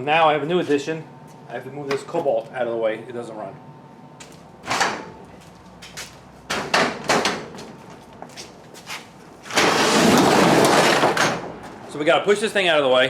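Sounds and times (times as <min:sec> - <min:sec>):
sharp knocks and clunks: 0:06.5 - 0:07.7.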